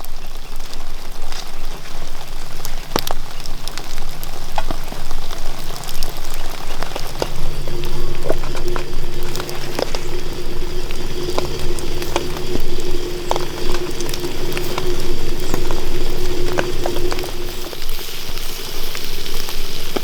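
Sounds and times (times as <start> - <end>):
food bubbling and sizzling: 0.0 - 20.0
fire popping and crackling: 0.5 - 20.0
steady low tone: 5.9 - 18.2.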